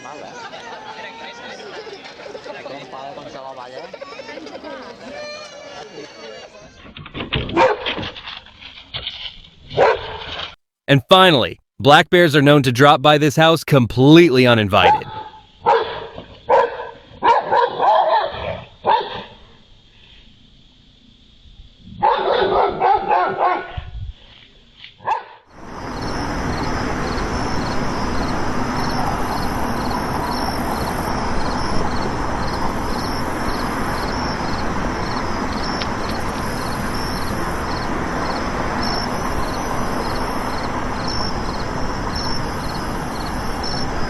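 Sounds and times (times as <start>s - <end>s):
dog barking: 7.5s - 7.9s, 9.8s - 10.2s, 14.8s - 19.3s, 22.0s - 23.8s, 25.0s - 25.4s
steady loud hiss: 25.6s - 44.0s.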